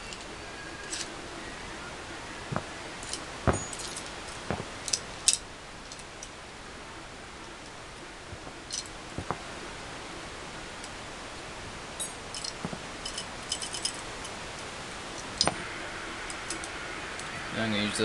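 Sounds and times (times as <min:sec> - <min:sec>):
metal pistol parts clicking: 0:00.0 - 0:01.1, 0:02.5 - 0:06.4, 0:08.7 - 0:08.9, 0:12.0 - 0:14.4, 0:15.2 - 0:15.6.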